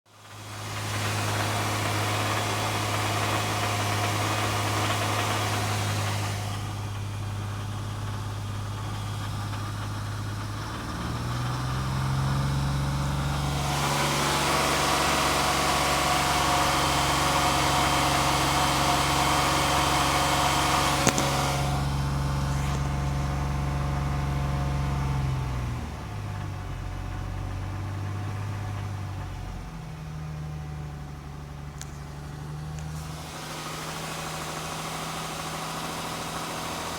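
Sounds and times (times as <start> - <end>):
engine knock or rattle: 0.1 - 36.9
car engine running: 0.2 - 36.9
sharp click: 21.0 - 21.7.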